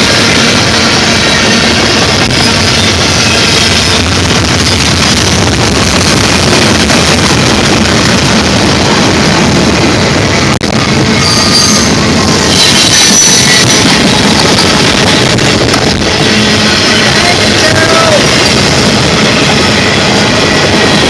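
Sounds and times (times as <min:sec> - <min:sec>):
freight train rumbling past: 0:00.0 - 0:21.0
high-pitched wheel squeal: 0:11.2 - 0:13.9.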